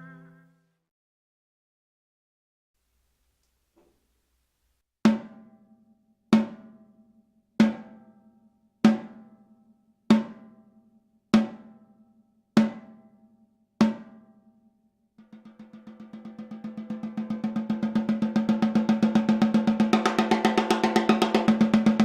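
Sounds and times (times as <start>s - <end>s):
snare drum roll: 15.4s - 22.0s.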